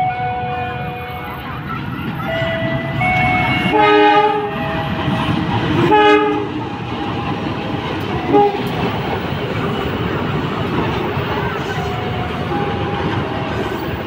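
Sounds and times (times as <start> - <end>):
train horn blasts: 0.0 - 1.4, 2.3 - 5.2, 5.8 - 6.6, 8.2 - 8.8, 11.8 - 13.8
train rumbling along track: 0.0 - 14.0.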